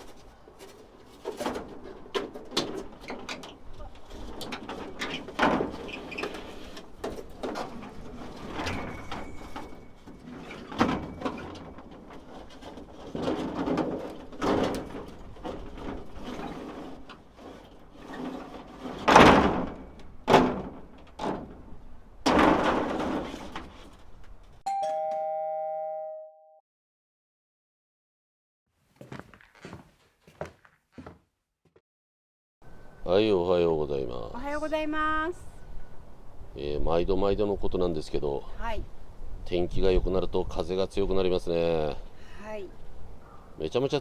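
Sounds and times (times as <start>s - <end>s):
two-note ding-dong chime: 24.7s - 26.6s.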